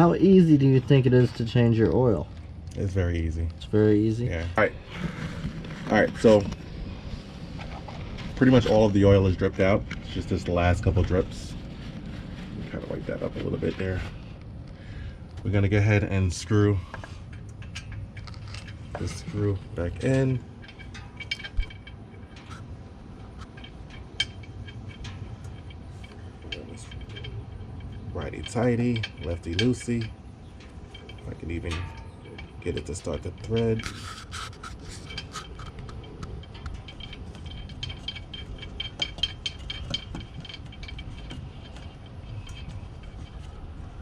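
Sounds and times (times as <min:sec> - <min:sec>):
metallic clicks and ticks: 0:14.4 - 0:44.0.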